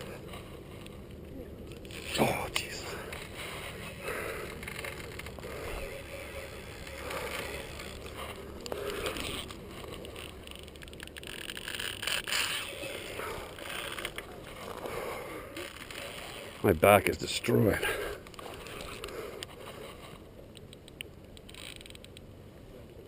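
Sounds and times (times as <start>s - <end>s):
fishing reel cranking: 1.7s - 16.7s, 21.4s - 22.2s.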